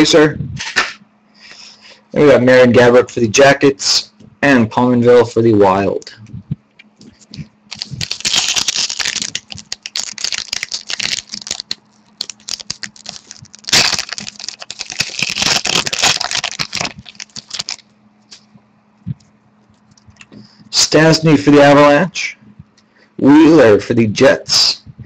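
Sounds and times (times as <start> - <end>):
card pack wrapping crinkling: 7.2 - 17.9.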